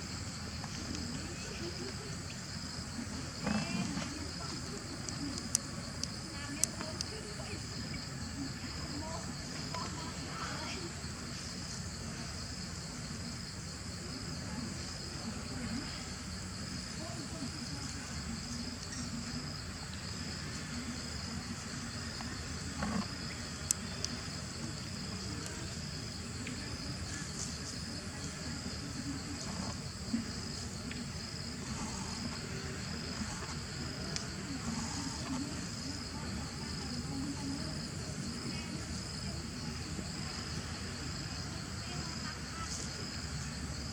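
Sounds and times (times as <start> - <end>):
insects chirping chorus: 0.0 - 43.9.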